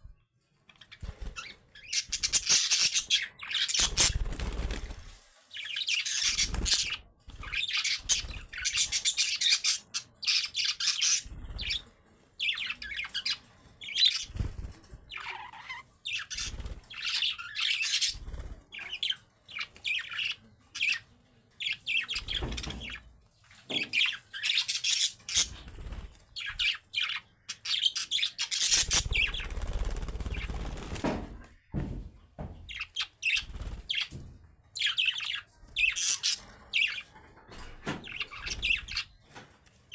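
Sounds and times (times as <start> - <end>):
budgerigars chirping and chattering: 0.7 - 31.2, 32.6 - 39.4
wing-flapping: 28.8 - 31.5.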